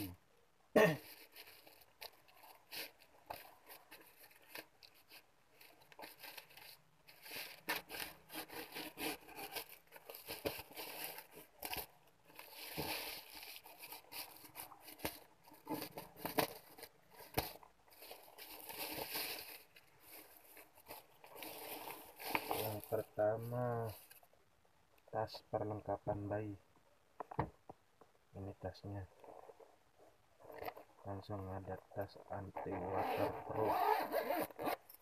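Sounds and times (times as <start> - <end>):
packaging crinkling and tearing: 1.3 - 24.1.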